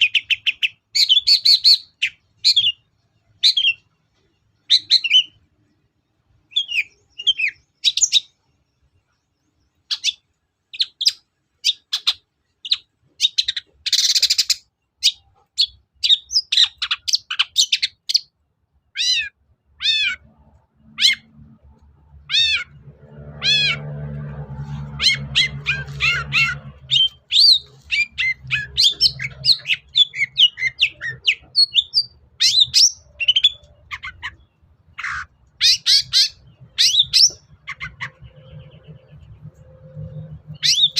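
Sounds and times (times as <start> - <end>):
low hum: 20.3 - 30.2, 36.4 - 40.9
shrike singing: 22.2 - 34.4.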